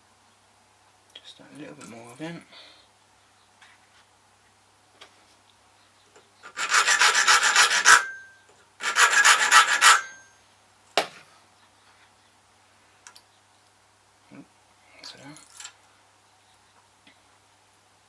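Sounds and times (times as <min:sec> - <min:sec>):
file rasping on metal key: 0:06.5 - 0:10.3.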